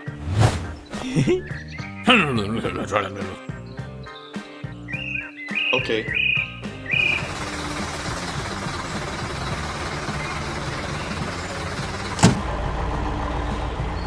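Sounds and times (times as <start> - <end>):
heavy machine engine running: 7.0 - 14.0.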